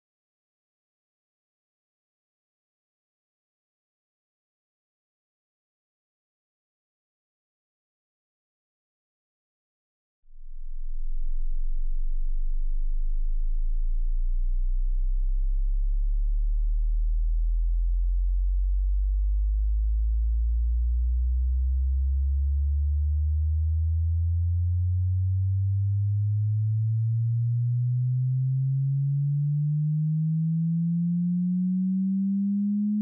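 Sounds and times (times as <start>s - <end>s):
rising sine tone sweep: 10.3s - 33.0s.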